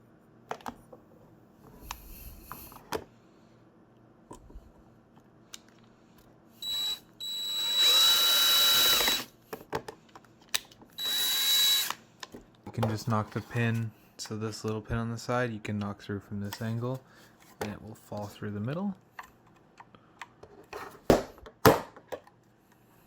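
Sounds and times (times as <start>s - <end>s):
power drill whining: 6.6s - 9.3s, 11.0s - 12.0s.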